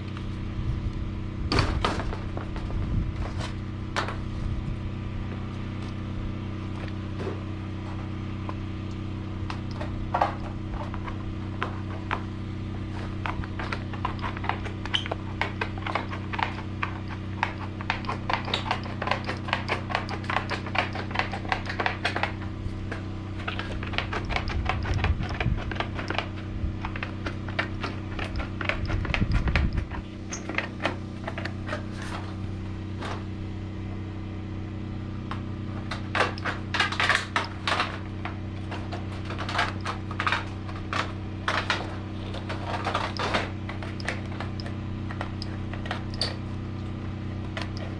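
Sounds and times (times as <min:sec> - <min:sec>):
steady low hum: 0:00.0 - 0:47.9
deeper thuds: 0:01.4 - 0:04.8
sharp knocks and clicks: 0:12.9 - 0:32.3, 0:35.3 - 0:46.4.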